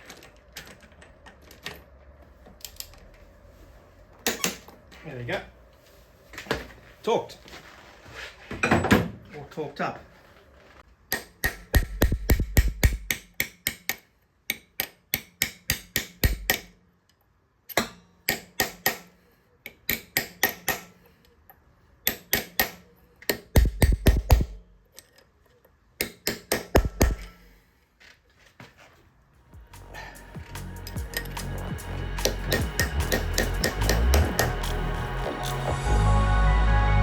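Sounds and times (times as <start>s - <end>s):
clicking percussion beat: 11.8s - 13.1s, 23.6s - 24.6s, 29.6s - 35.9s
background music: 29.5s - 37.0s
deep bass hits: 29.6s - 37.0s.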